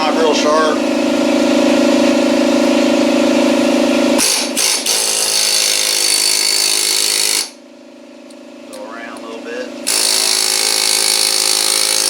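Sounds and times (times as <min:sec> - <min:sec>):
pneumatic air hammer: 0:04.2 - 0:07.6, 0:09.8 - 0:12.0.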